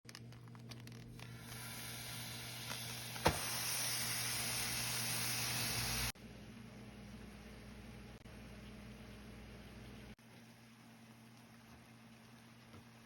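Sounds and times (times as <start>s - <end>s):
meat sizzling in a pan: 1.4s - 6.2s.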